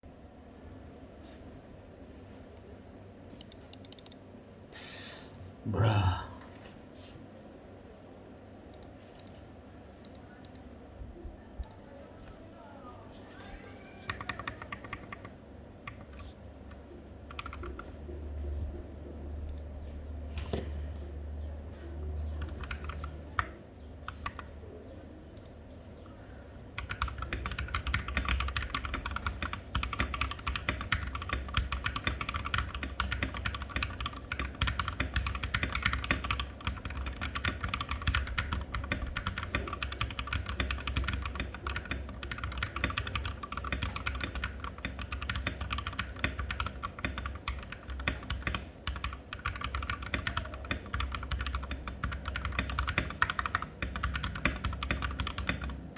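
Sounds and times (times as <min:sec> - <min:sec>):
typing on mechanical keyboard: 0:13.8 - 0:18.0, 0:22.3 - 0:24.6, 0:26.7 - 0:55.9.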